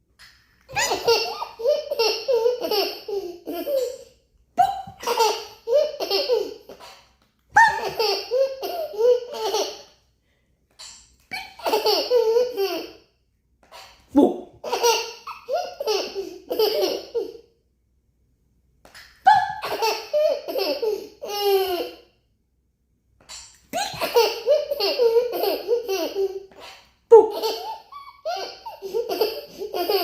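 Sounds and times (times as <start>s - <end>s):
baby laughing: 0.7s - 9.9s, 11.3s - 13.0s, 13.6s - 17.5s, 19.3s - 22.0s, 23.7s - 30.0s.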